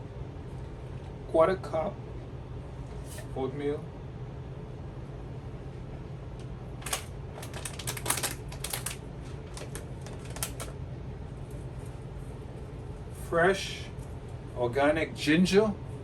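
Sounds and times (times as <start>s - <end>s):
steady low hum: 0.0s - 16.0s
oats rattling into blender jar: 6.8s - 10.7s.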